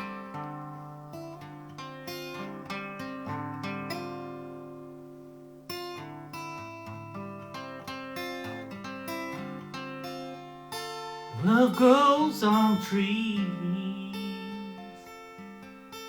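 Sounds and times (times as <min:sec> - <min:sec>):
guitar plucked and strummed: 0:00.0 - 0:16.0.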